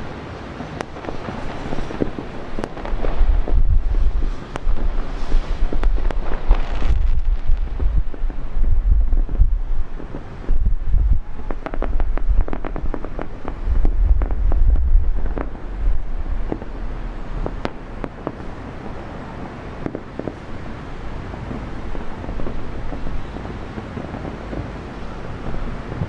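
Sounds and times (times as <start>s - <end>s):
wind rumbling on microphone: 0.0s - 26.0s
fireworks cracking and popping: 0.7s - 20.6s, 21.3s - 26.0s.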